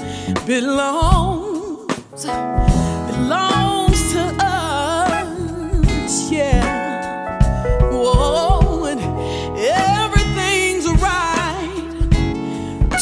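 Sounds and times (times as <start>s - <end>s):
soul band playing: 0.0s - 13.0s
drum hits: 2.6s - 4.4s, 5.1s - 9.0s, 9.8s - 13.0s.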